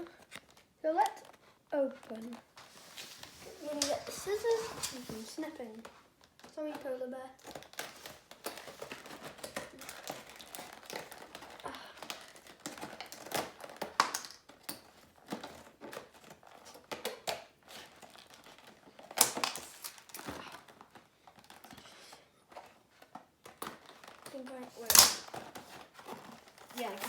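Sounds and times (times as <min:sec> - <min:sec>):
plastic packaging crinkling: 0:00.0 - 0:06.7, 0:07.3 - 0:27.0
scissors snipping: 0:24.8 - 0:25.4.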